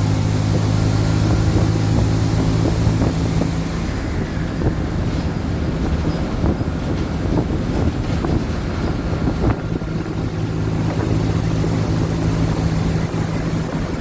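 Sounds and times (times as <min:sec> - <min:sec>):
bus diesel engine hum: 0:00.0 - 0:14.0
road rumble: 0:00.0 - 0:14.0
rattles and knocks: 0:04.6 - 0:14.0.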